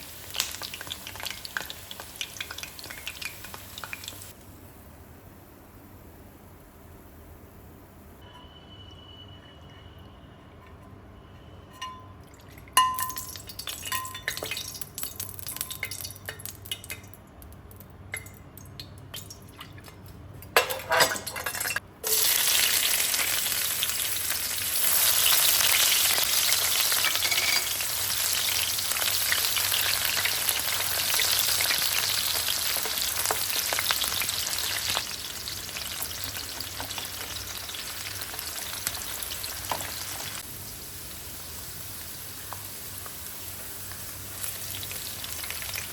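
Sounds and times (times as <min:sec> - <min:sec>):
food sizzling in hot oil: 0:00.0 - 0:04.8, 0:12.8 - 0:17.0, 0:20.7 - 0:45.9
utensils clinking: 0:20.6 - 0:22.2, 0:27.0 - 0:27.7.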